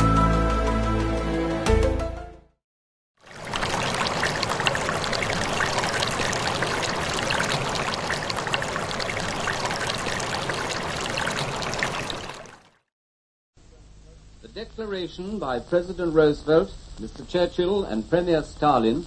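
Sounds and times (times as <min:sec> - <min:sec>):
crackling hiss with pops: 0:13.7 - 0:19.0.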